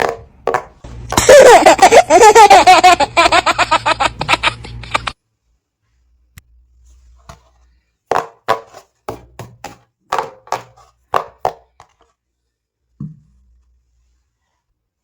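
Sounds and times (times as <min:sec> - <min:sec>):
baby giggling: 0:01.1 - 0:05.2.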